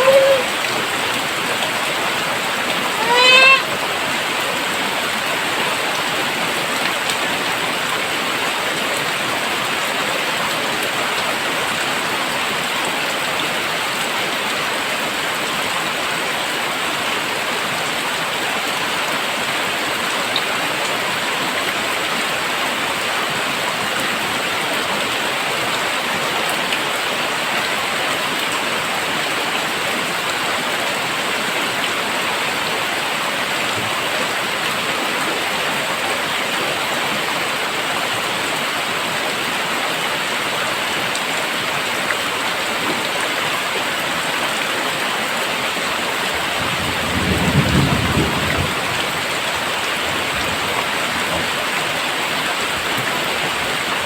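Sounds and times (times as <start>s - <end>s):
heavy rain hissing: 0.0s - 6.0s.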